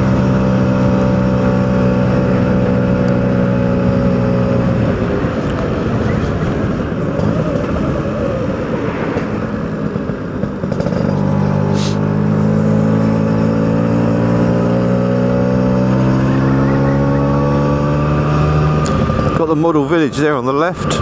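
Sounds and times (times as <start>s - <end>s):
two-stroke engine running: 9.4s - 21.0s
short hiss: 11.7s - 12.0s.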